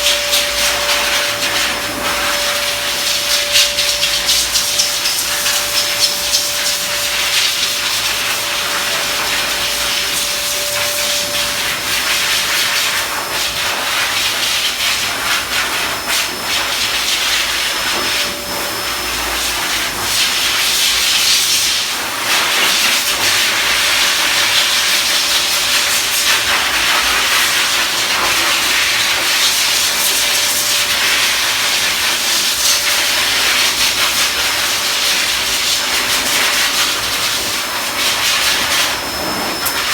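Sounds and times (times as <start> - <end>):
faint steady whine: 0.0 - 15.2
blow dryer rushing air: 0.0 - 39.9.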